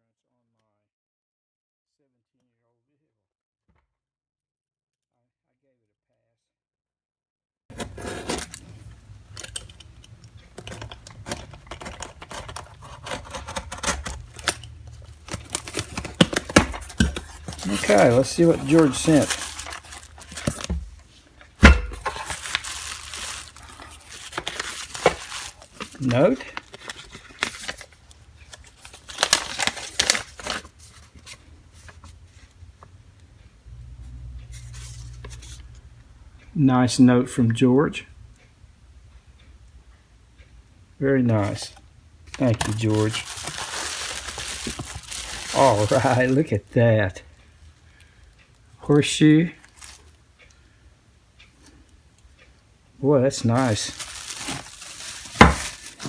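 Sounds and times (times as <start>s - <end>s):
objects clicking and knocking: 7.7s - 27.9s
paper rustling and crinkling: 7.7s - 32.2s, 41.4s - 46.6s, 49.6s - 50.2s, 53.3s - 56.0s
low steady hum: 7.7s - 56.0s.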